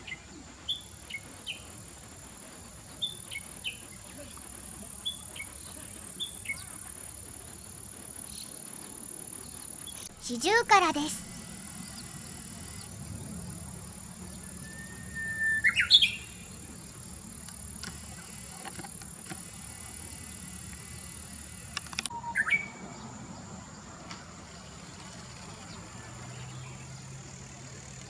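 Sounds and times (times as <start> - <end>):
steady high hiss: 0.0 - 28.0
bird singing: 5.0 - 6.9, 14.2 - 17.0, 22.0 - 27.8.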